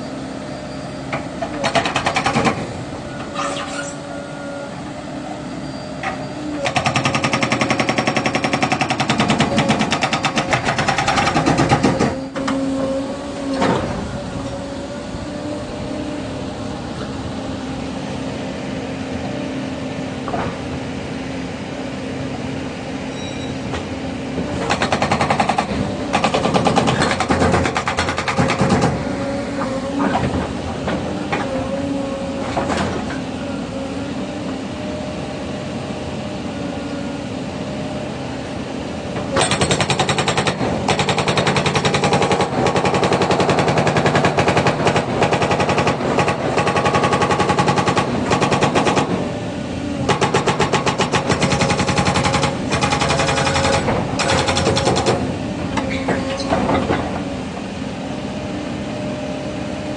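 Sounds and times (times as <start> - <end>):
excavator diesel engine running: 0.0 - 59.9
hydraulic breaker hammering: 1.4 - 2.7, 6.6 - 12.6, 24.6 - 29.0, 39.3 - 49.3, 50.0 - 57.2.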